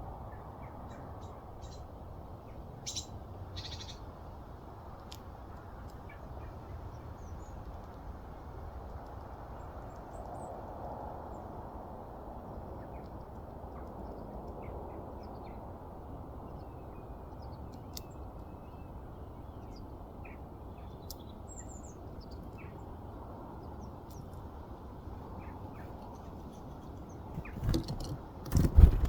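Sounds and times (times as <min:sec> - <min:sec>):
small birds chirping: 0:00.3 - 0:29.0
knocks and bumps: 0:27.4 - 0:29.0.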